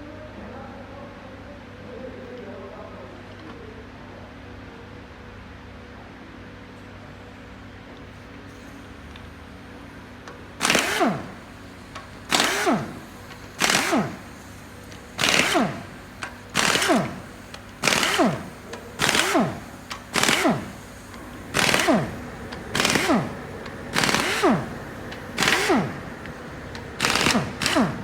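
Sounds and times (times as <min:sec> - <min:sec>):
small motorised tool whirring: 0:10.6 - 0:28.0.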